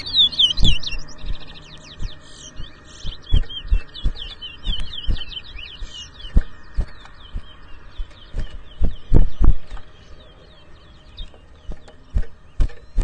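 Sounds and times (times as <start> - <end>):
finch singing warbling whistles: 0.0 - 13.0
short low thumps: 0.5 - 9.8.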